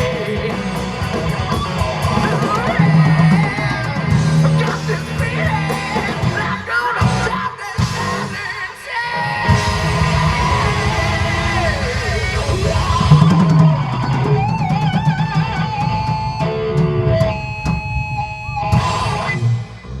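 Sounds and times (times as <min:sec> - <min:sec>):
rock band playing loudly: 0:00.0 - 0:20.0
electric guitar held notes: 0:09.2 - 0:20.0.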